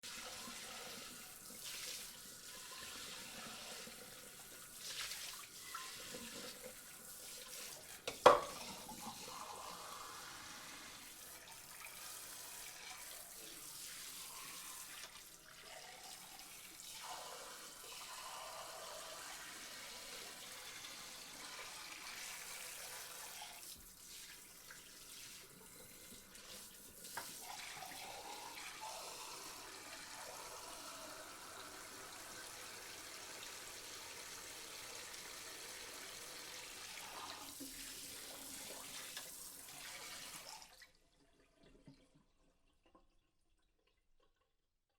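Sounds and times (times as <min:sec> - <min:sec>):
tap water splashing in sink: 0:02.8 - 0:09.4, 0:22.0 - 0:28.4, 0:36.9 - 0:40.9
crockery clinking: 0:08.1 - 0:08.6
dishes clattering: 0:08.1 - 0:08.6.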